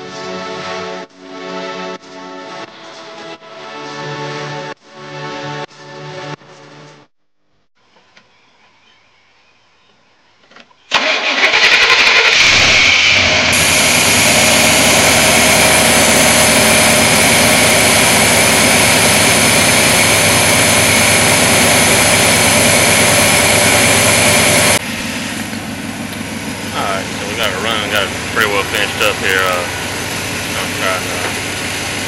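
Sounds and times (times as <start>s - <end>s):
truck engine starting and idling: 10.9s - 32.0s.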